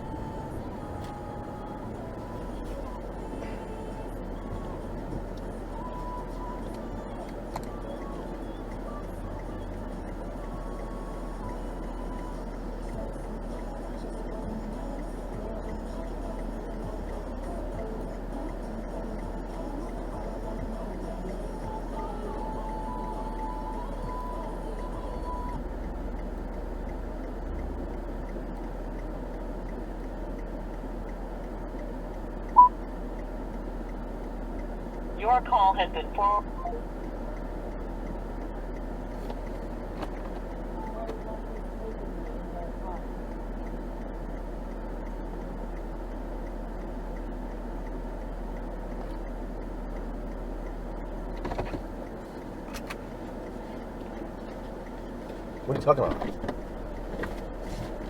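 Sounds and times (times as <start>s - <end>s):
car cabin rumble: 0.0s - 58.0s
faint regular ticking: 0.0s - 58.0s
sharp electronic beep: 32.5s - 32.8s, 35.8s - 36.9s.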